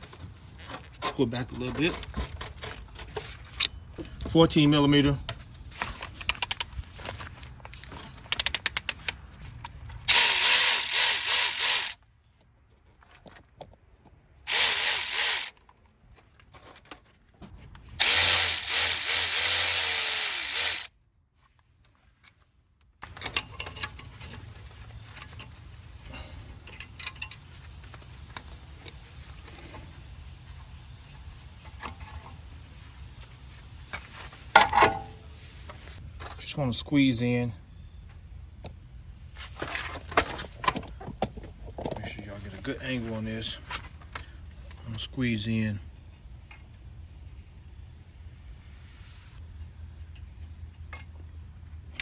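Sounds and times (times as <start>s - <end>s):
power tool whirring whine: 10.1s - 12.0s, 14.5s - 15.5s, 18.0s - 20.9s
sharp clicks: 10.1s - 12.0s, 14.5s - 15.5s, 18.0s - 20.9s.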